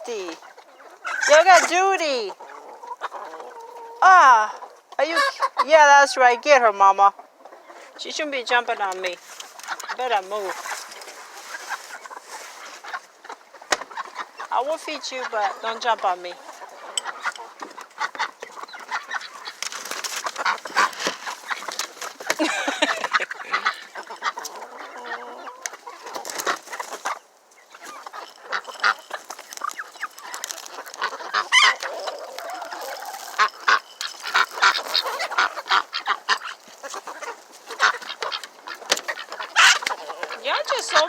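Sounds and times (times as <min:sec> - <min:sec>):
chickens squawking: 0:00.0 - 0:41.0.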